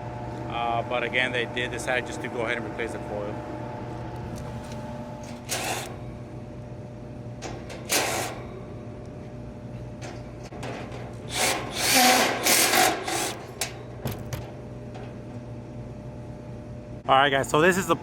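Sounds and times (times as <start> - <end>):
steady low hum: 0.0 - 18.0
tools scraping sheet metal: 5.2 - 5.9, 10.6 - 13.7.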